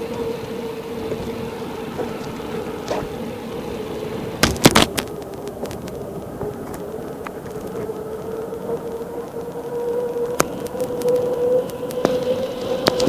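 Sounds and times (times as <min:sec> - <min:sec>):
bicycle tyres humming: 0:00.0 - 0:13.0.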